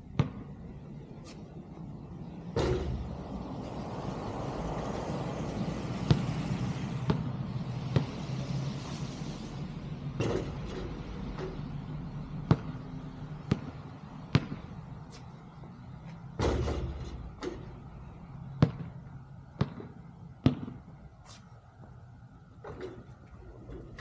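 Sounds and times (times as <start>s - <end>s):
basketball bouncing on hard surface: 0.1s - 0.6s, 2.5s - 3.4s, 5.9s - 8.2s, 10.2s - 11.6s, 12.3s - 15.2s, 16.1s - 17.8s, 18.5s - 19.0s, 19.6s - 20.9s
heavy ball hit: 2.6s - 3.4s.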